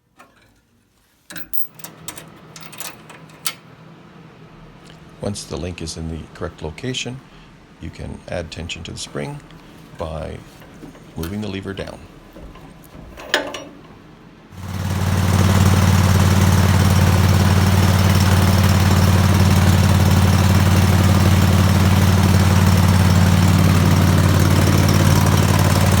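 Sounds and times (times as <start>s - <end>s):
garden tractor engine running: 9.0s - 26.0s.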